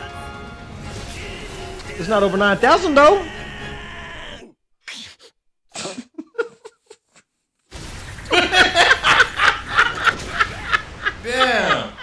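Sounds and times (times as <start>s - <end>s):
people laughing loudly: 6.1s - 7.1s, 8.2s - 12.0s.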